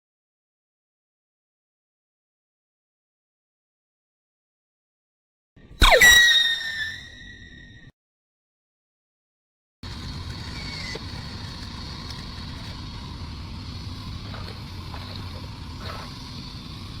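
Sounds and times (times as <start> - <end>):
toy truck motor whining: 9.9 - 12.8.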